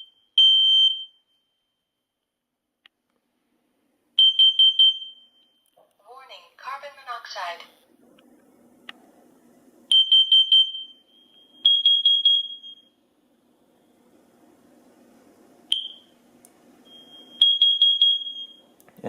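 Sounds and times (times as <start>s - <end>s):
smoke and carbon monoxide alarms beeping: 0.0s - 2.0s, 4.2s - 5.8s, 9.9s - 13.0s, 15.7s - 18.8s.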